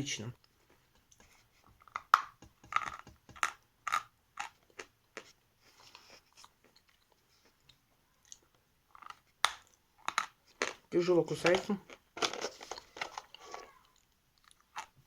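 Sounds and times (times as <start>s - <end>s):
teeth crunching hard chalk: 1.7s - 5.4s, 8.3s - 10.9s, 11.8s - 15.0s.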